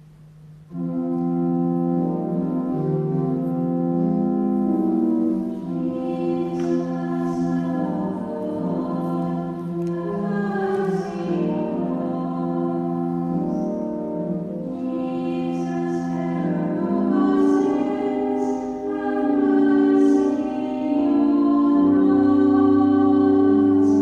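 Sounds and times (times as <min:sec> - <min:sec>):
church music held chords: 0:00.0 - 0:24.0.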